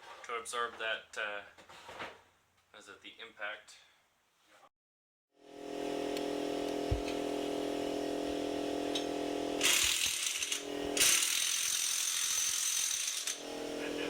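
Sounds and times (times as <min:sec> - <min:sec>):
impact wrench motor whine: 0:05.4 - 0:14.0
impact wrench hammering: 0:08.9 - 0:13.4.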